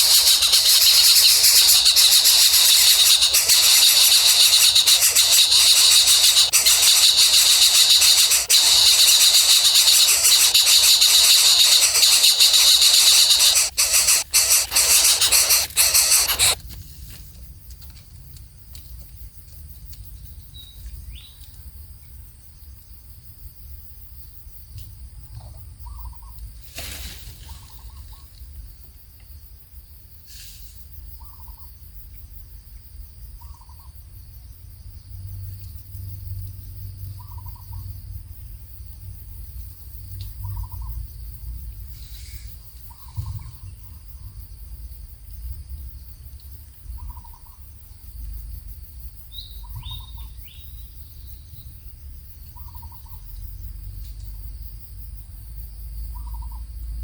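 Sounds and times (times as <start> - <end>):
bird hooting softly: 0.0 - 16.6
insects droning: 0.0 - 16.6.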